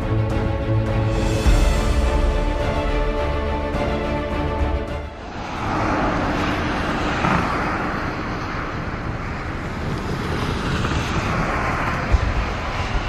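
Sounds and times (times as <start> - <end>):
vehicle engines: 2.6 - 13.0
tyre roar on road: 3.1 - 13.0.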